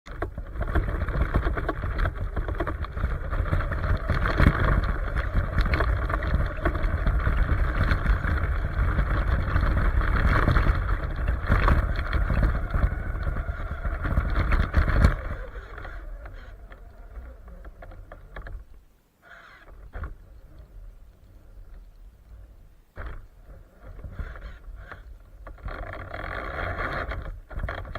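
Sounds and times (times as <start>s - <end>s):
small knocks: 0.1s - 18.8s
toy truck motor running: 2.8s - 18.4s.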